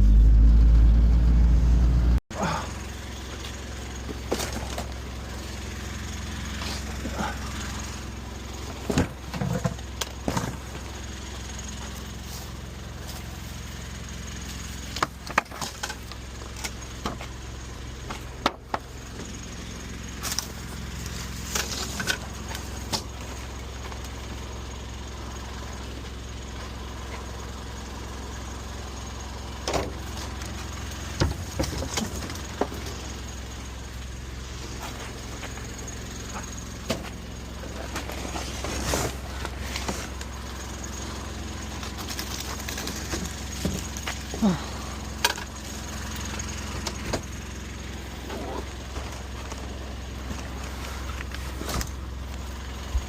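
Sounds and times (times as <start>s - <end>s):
loud low rumble: 0.0s - 3.1s
vehicle engine humming: 0.0s - 53.0s.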